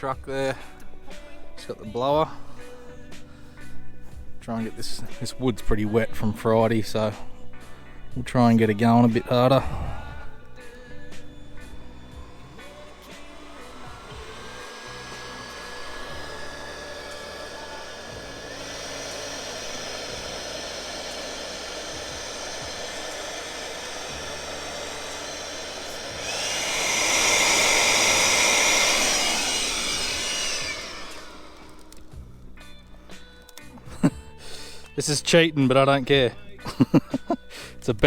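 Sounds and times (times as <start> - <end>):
leaf blower motor whining: 8.4 - 35.0.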